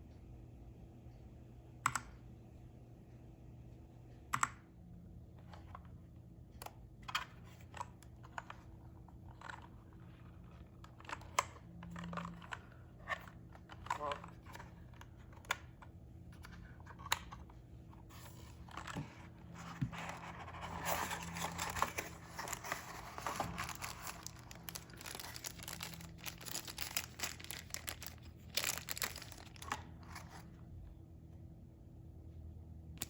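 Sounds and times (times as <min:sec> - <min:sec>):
packaging crinkling and rustling: 0:18.1 - 0:30.5.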